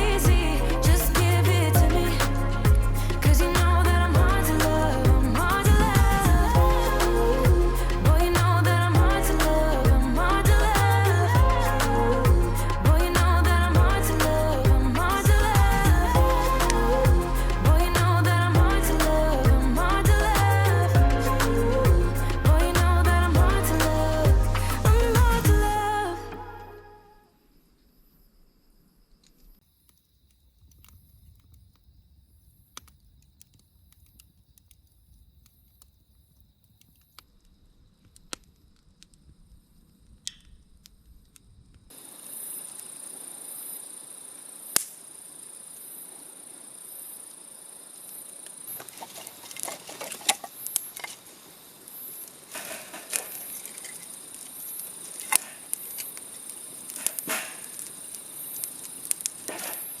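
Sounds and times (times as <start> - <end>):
insects chirring: 27.0 - 60.0
wood fire crackling and popping: 52.6 - 60.0.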